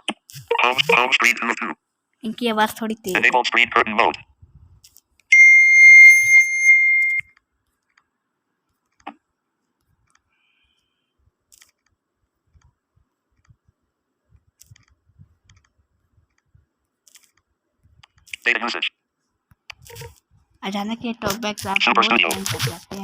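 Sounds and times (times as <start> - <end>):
high electronic phone beep: 5.3 - 7.3.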